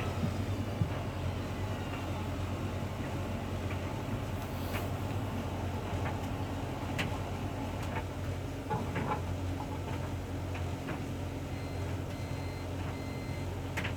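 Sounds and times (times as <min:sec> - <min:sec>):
washing machine motor hum: 0:00.0 - 0:08.2, 0:11.1 - 0:13.9.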